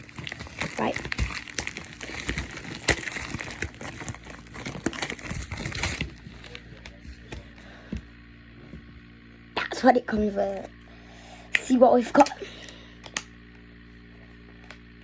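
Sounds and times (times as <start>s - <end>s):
packaging crinkling and tearing: 0.0s - 7.5s.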